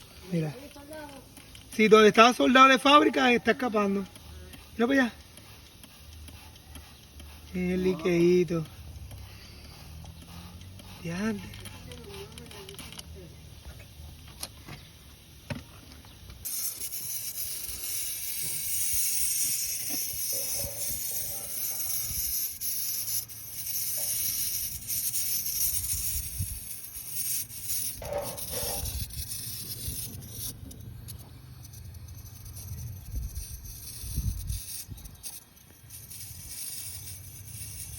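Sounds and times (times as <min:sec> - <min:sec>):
gas jet hissing: 0:00.0 - 0:37.9.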